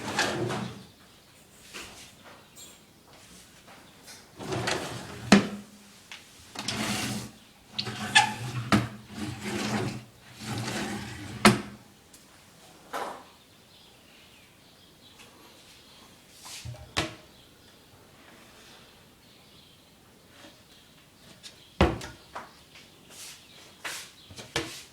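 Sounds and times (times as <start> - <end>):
drawers sliding: 0.0 - 0.8, 4.4 - 5.7, 6.5 - 11.8.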